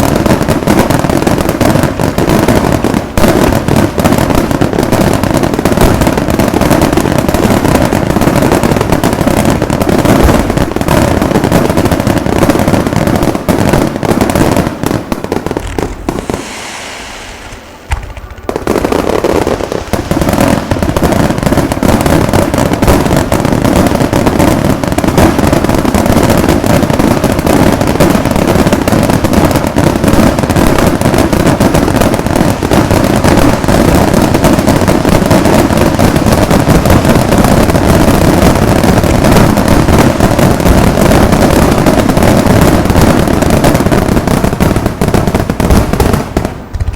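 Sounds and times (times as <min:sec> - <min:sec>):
fireworks crackling bangs: 0:00.0 - 0:46.9
fireworks shell bursts: 0:15.6 - 0:20.9.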